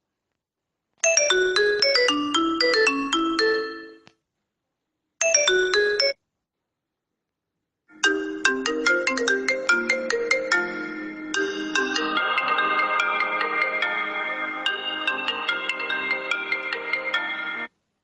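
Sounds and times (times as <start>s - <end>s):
phone ringtone melodies: 1.0s - 4.1s, 5.2s - 6.2s, 7.9s - 17.7s.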